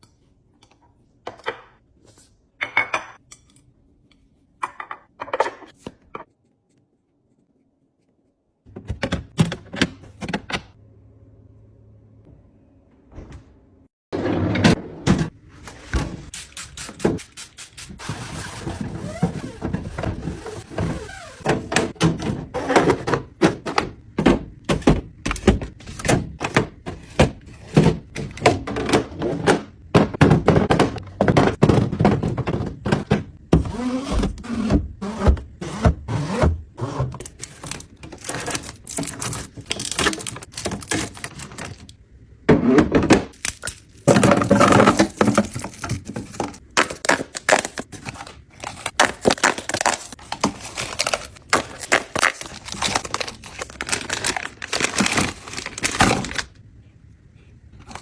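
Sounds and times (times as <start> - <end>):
containers and packaging clattering: 18.0 - 35.2, 36.8 - 56.6.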